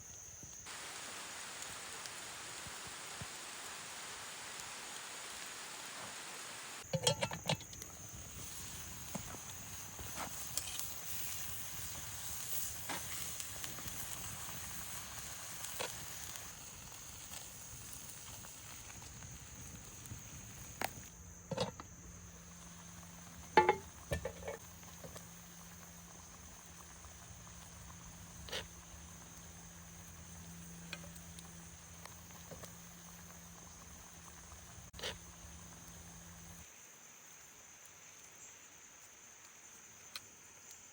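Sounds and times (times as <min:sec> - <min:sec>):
campfire crackling: 0:00.0 - 0:36.7
soft hiss: 0:00.0 - 0:40.9
sharp pops of fire: 0:06.8 - 0:36.6.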